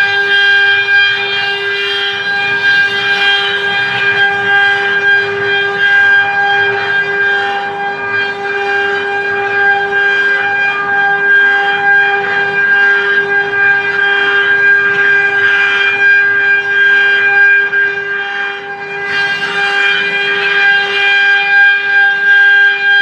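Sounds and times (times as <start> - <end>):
cnc spindle high whine: 0.0 - 23.0.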